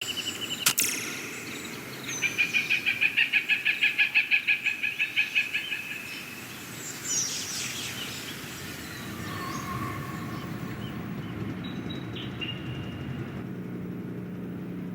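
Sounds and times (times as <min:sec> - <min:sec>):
bird chirps: 0:00.0 - 0:13.4
bird trill: 0:00.0 - 0:13.4
outdoor background: 0:00.0 - 0:14.9
sharp click: 0:00.6 - 0:01.6.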